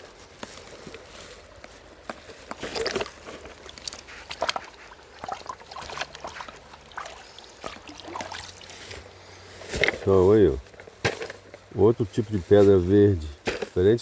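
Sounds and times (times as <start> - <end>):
water sloshing faintly: 0.0 - 12.8.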